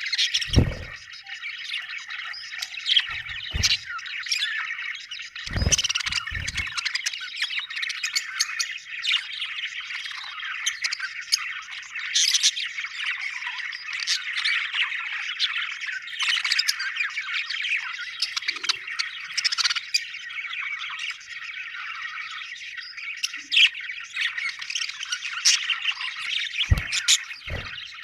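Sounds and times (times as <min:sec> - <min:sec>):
bird squawks: 0:00.0 - 0:01.2, 0:02.6 - 0:04.1, 0:05.4 - 0:08.3, 0:23.3 - 0:28.0
budgerigars chirping: 0:00.0 - 0:28.0.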